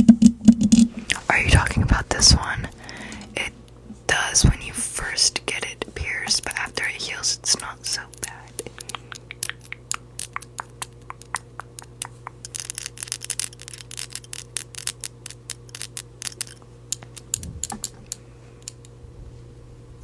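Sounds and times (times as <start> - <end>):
low electrical hum: 0.0 - 20.0
quick uneven clicks and taps: 8.1 - 13.2
brief low rumble: 17.4 - 17.8.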